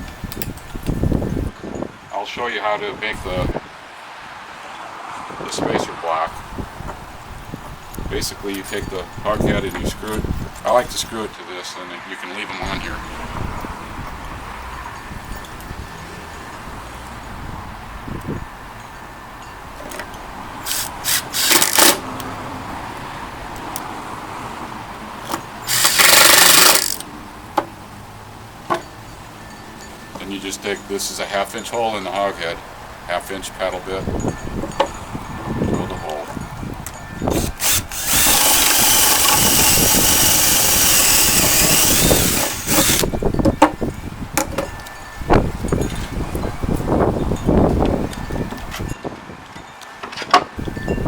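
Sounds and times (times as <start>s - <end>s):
power drill driving screws: 20.6s - 22.0s, 25.6s - 27.0s, 37.3s - 43.1s.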